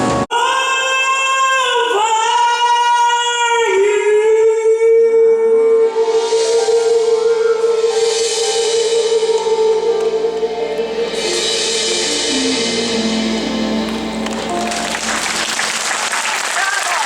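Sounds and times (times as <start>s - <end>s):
live concert music with long held note: 0.0s - 17.0s.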